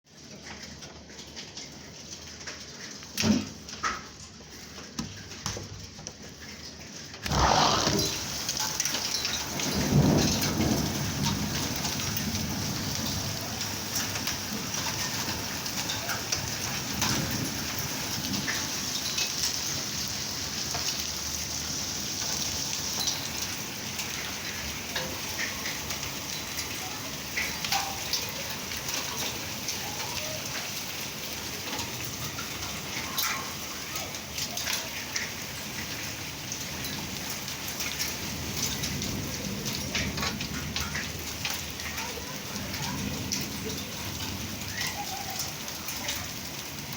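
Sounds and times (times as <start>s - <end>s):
raindrops ticking on surfaces: 0.1s - 46.9s
heavy rain pouring: 6.1s - 46.9s
low thunder rumble: 9.5s - 14.0s, 38.2s - 41.5s.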